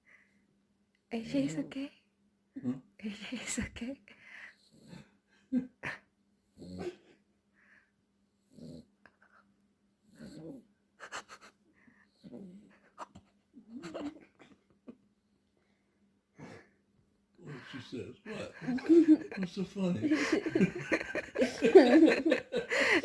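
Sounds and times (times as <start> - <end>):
dog snoring: 8.5 - 8.9, 10.1 - 10.6
faint steady hum: 8.9 - 23.0.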